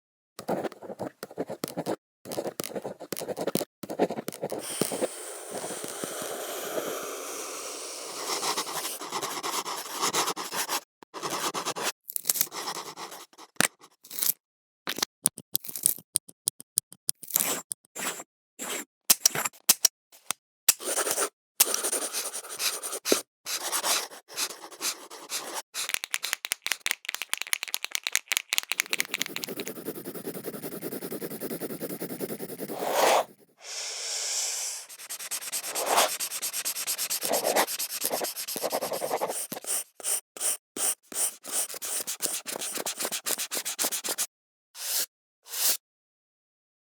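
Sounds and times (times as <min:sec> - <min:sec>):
pencil rubbing on paper: 0:00.4 - 0:07.0, 0:08.0 - 0:11.9, 0:12.5 - 0:13.5, 0:20.8 - 0:25.6, 0:28.8 - 0:33.6, 0:34.4 - 0:45.8
pencil writing on paper: 0:00.4 - 0:11.9, 0:12.5 - 0:13.6, 0:17.4 - 0:18.9, 0:20.8 - 0:25.6, 0:28.8 - 0:33.6, 0:34.6 - 0:45.7.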